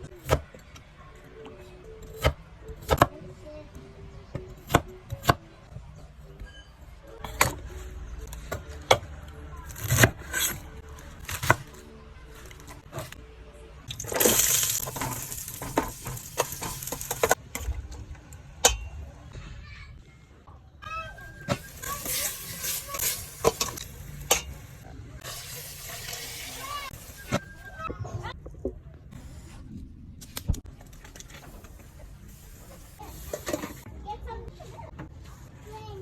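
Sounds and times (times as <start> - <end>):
utensils and dishes clinking: 13.9 - 17.4, 21.3 - 27.7.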